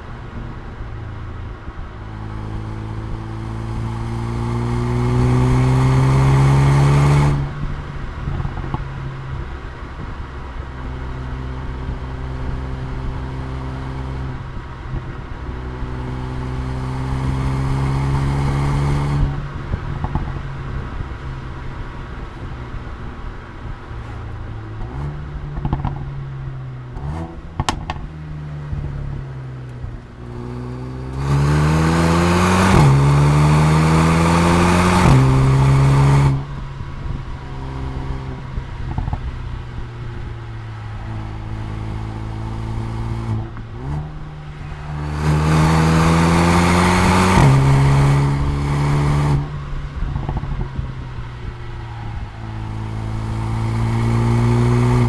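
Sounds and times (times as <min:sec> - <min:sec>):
car engine revving: 0:00.0 - 0:55.0
exhaust cracks: 0:14.3 - 0:55.0.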